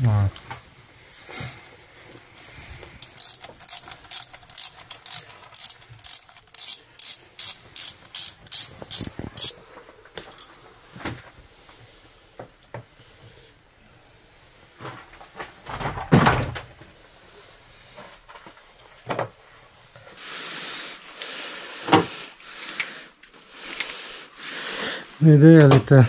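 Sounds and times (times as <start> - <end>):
ratchet wrench clicking: 3.0 - 9.5.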